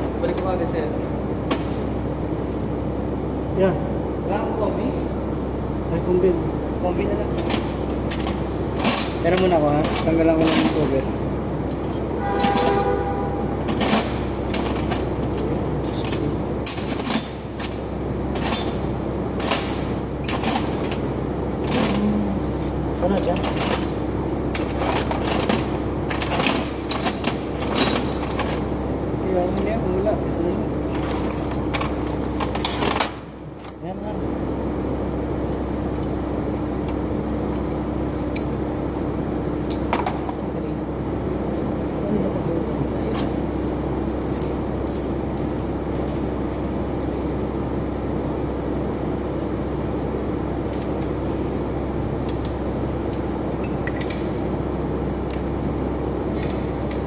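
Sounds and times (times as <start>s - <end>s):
low machine hum: 0.0s - 57.0s.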